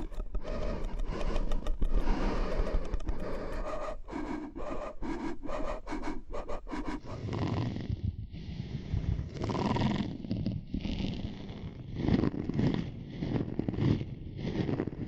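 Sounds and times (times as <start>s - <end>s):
scratching and rubbing: 0.0s - 7.9s
low rumbling rub: 0.0s - 9.7s.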